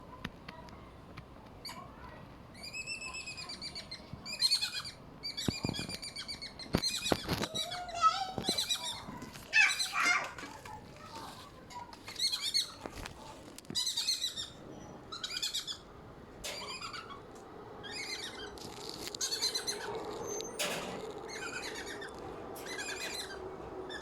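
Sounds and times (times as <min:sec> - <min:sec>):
squirrel chirping: 0:02.5 - 0:10.1, 0:11.7 - 0:12.9, 0:13.8 - 0:15.9, 0:16.5 - 0:24.0.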